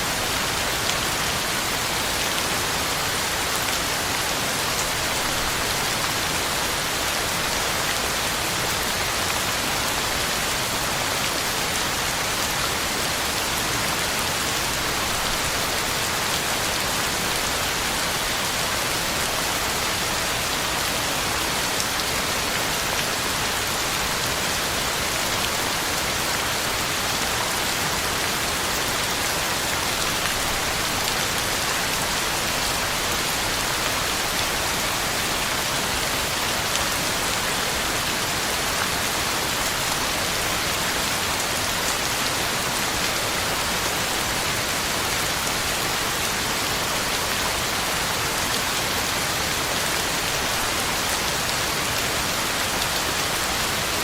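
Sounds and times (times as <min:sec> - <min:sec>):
heavy rain on leaves: 0:00.0 - 0:54.0.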